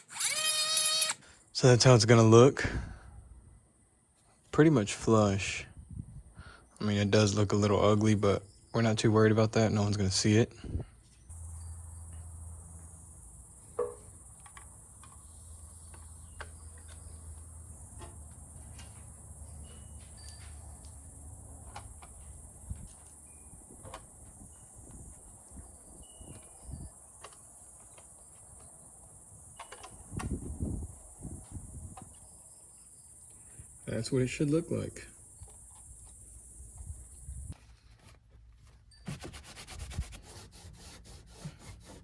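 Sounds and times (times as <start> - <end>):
crickets chirping: 11.2 - 37.6.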